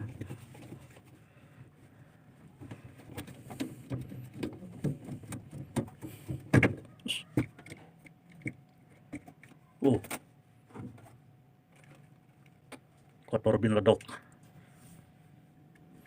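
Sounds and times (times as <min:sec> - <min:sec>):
plastic parts clicking and scraping: 0:02.6 - 0:12.8.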